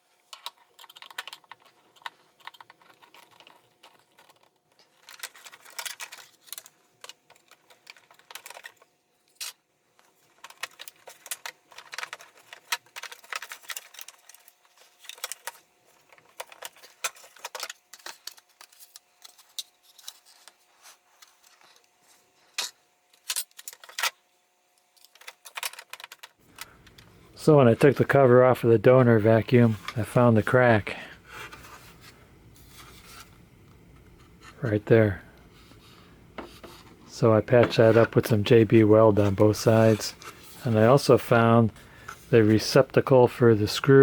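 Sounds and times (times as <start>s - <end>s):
faint steady hum: 0.0s - 44.0s
plastic parts clicking and rattling: 0.2s - 28.2s.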